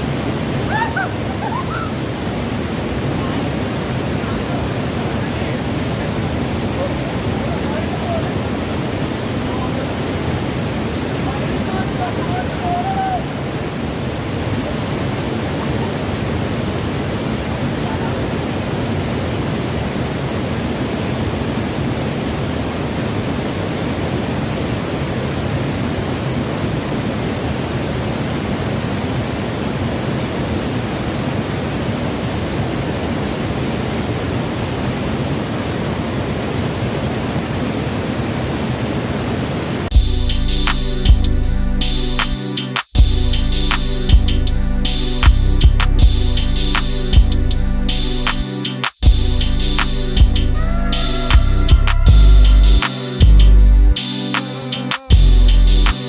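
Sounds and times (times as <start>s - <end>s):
waterfall rushing: 0.0s - 39.9s, 50.6s - 56.0s
music with drums and guitar: 39.9s - 56.0s.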